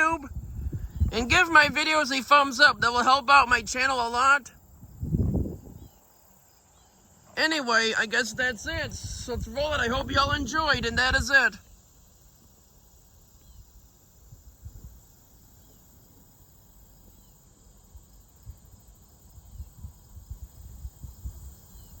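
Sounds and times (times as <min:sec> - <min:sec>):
wind gusting on microphone: 0:00.0 - 0:06.0, 0:07.4 - 0:11.8, 0:13.5 - 0:15.1, 0:19.3 - 0:22.0
faint insect chirring: 0:00.0 - 0:22.0.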